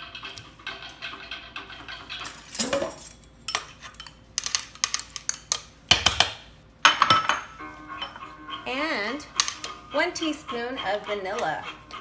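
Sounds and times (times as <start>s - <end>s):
utensil scraping bowl: 0.0s - 2.5s, 7.6s - 12.0s.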